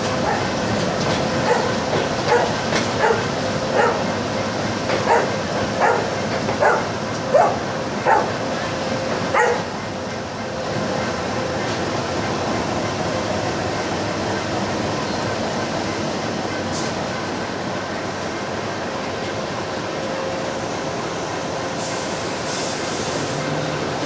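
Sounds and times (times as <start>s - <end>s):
dog barking: 0.0s - 8.6s, 9.2s - 9.9s
train running: 0.0s - 24.0s.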